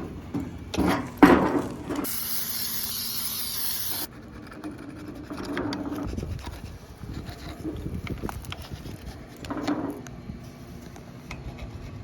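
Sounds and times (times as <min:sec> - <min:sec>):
aerosol spray hiss: 0:02.1 - 0:04.1.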